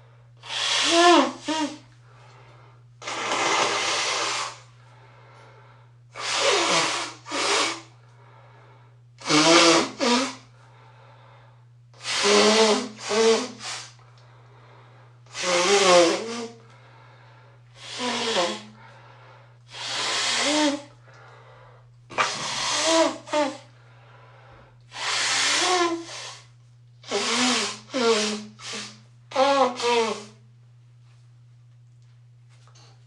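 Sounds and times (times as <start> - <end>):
person blowing nose: 0.4 - 1.9, 3.0 - 4.7, 6.1 - 8.0, 9.2 - 10.5, 12.0 - 14.0, 15.3 - 16.6, 17.8 - 18.8, 19.7 - 21.0, 22.1 - 23.7, 24.9 - 30.4.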